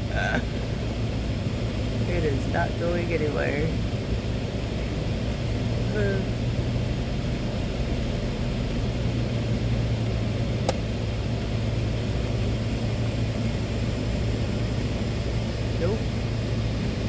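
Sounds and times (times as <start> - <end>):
vehicle engine and fan humming: 0.0 - 17.0
sharp click: 10.6 - 10.8.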